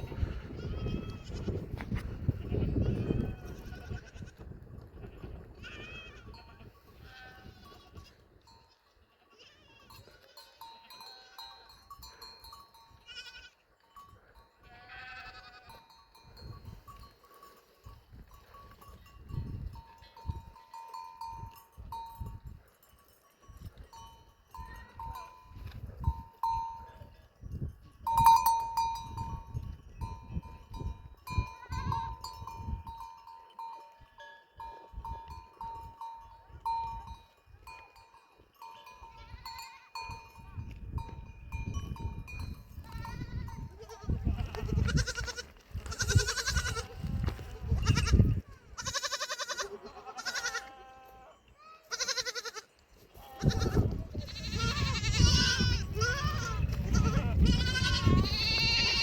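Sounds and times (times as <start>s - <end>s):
goats and sheep bleating: 0.0s - 13.7s, 14.4s - 16.2s, 31.3s - 32.6s, 38.6s - 40.2s, 42.3s - 59.0s
livestock bells ringing: 6.3s - 44.1s.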